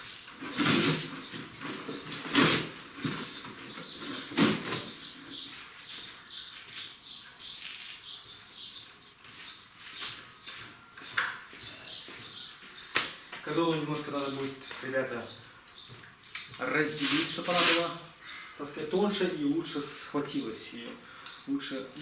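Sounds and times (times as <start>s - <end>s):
cardboard rustling and crackling: 0.0s - 5.7s
scraping rustles: 0.0s - 8.6s, 16.2s - 18.0s.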